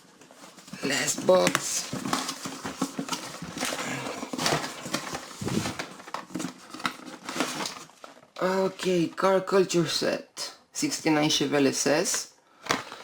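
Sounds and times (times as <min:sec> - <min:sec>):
cardboard box being opened: 0:00.4 - 0:08.1.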